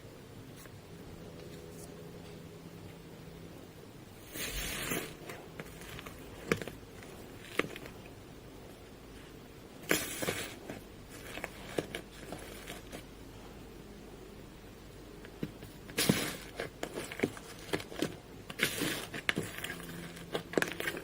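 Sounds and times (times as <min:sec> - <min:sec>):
slime squishing: 0:09.8 - 0:13.1, 0:15.3 - 0:21.0.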